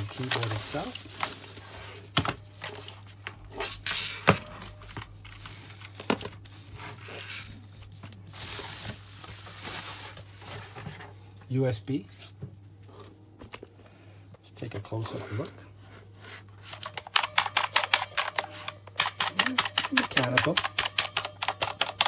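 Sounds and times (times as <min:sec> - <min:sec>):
packaging crinkling and rustling: 0:00.0 - 0:03.4, 0:04.5 - 0:11.1.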